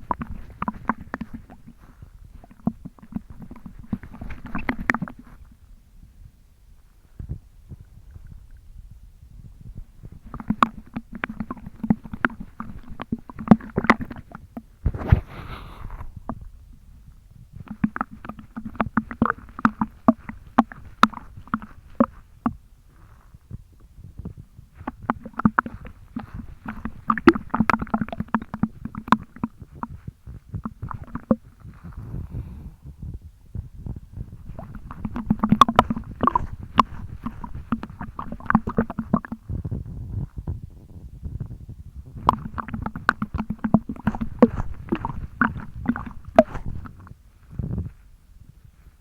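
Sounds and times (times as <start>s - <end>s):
liquid sloshing in belly: 0.0s - 5.6s, 10.0s - 15.3s, 17.6s - 22.6s, 24.7s - 32.6s, 34.1s - 39.8s, 42.1s - 47.5s.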